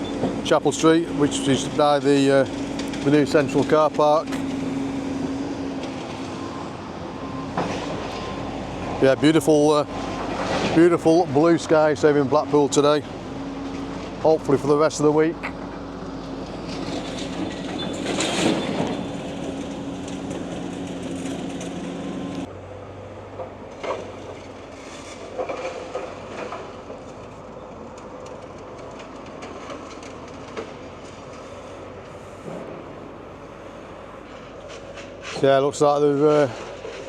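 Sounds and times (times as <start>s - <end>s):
excavator engine humming: 0.0s - 37.0s
metal clanks from rubble: 16.6s - 22.0s, 23.8s - 27.4s.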